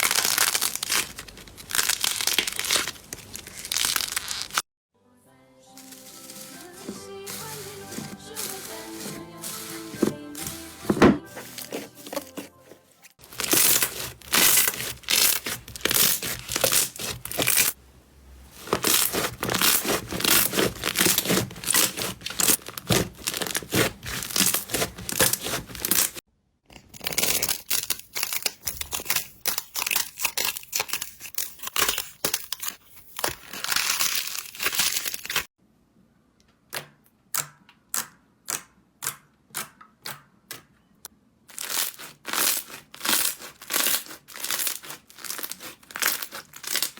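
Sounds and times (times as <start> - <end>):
slime squeezed by hand crackling: 0.0 - 4.6, 13.2 - 17.8, 18.6 - 26.2, 41.5 - 46.9.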